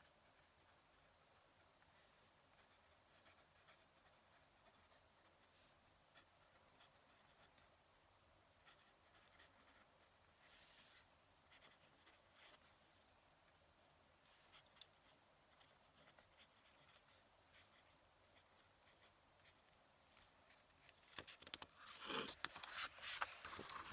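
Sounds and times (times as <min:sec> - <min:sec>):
pen nib scratching paper: 0:00.2 - 0:07.7, 0:08.6 - 0:12.7, 0:14.3 - 0:19.8, 0:21.4 - 0:22.8.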